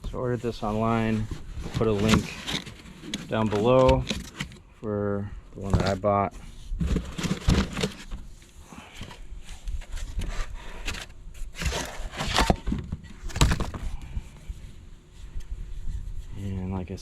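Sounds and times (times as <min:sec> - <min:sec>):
packaging rustling: 0:13.2 - 0:14.0.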